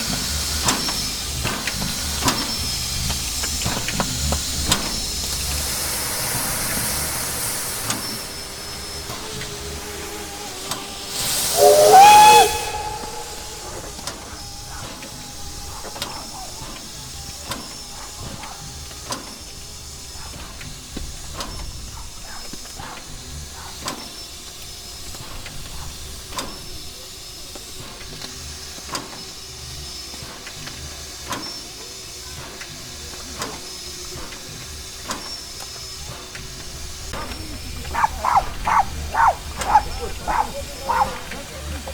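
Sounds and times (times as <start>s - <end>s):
steam hissing and humming: 0.0s - 17.2s
steam blast with whistling tone: 10.9s - 14.5s.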